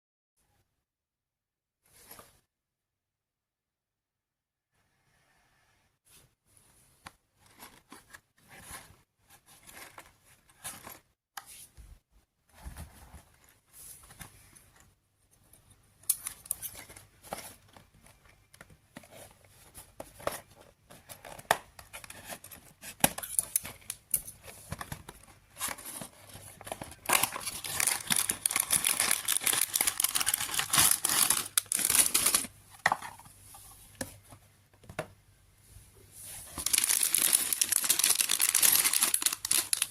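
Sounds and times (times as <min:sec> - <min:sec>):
plastic and paper crinkling: 0:16.3 - 0:32.5, 0:36.4 - 0:39.9.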